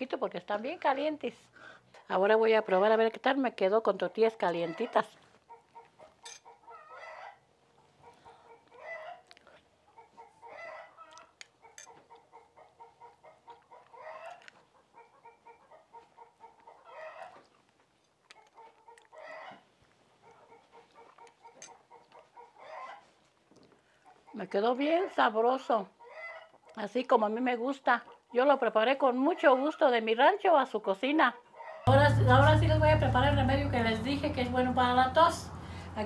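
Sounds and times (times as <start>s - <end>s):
chickens clucking: 4.6s - 17.5s, 18.5s - 23.3s
loud chicken call: 6.7s - 7.4s, 8.3s - 9.3s, 10.4s - 11.2s.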